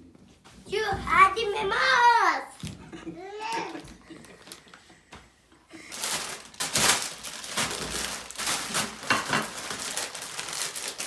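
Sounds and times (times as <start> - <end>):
plastic packaging crinkling: 3.5 - 4.8, 5.8 - 11.0.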